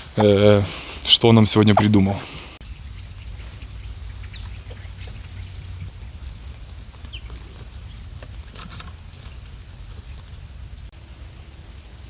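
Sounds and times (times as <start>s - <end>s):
wind rumble on microphone: 2.7s - 12.0s.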